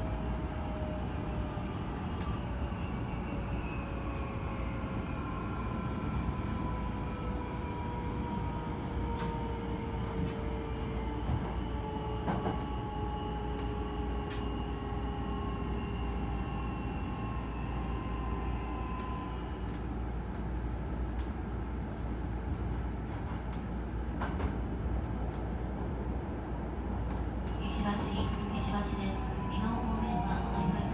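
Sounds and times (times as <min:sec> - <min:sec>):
train whine: 0:00.0 - 0:20.0, 0:27.1 - 0:30.9
electric train rumbling: 0:00.0 - 0:30.9.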